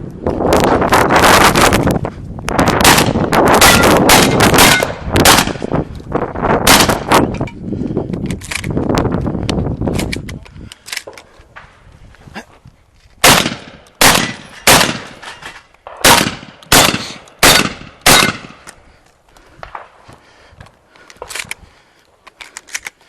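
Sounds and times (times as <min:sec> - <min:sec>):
shotgun shots: 0:02.8 - 0:05.7, 0:06.6 - 0:07.3, 0:13.2 - 0:18.6.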